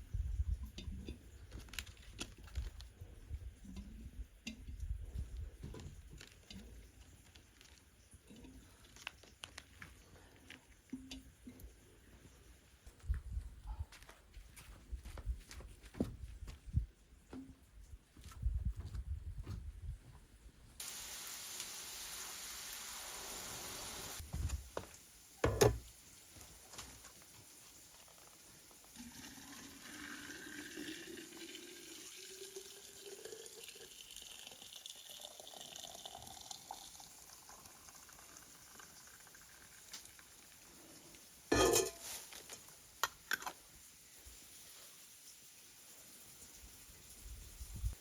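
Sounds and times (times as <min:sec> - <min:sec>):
water running: 0:28.9 - 0:40.5
liquid pouring into container: 0:29.0 - 0:40.6.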